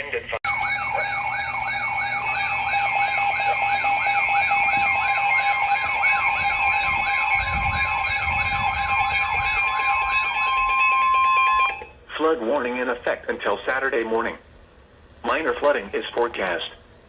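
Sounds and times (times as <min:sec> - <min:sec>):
warbling electronic alert siren: 0:00.4 - 0:11.9.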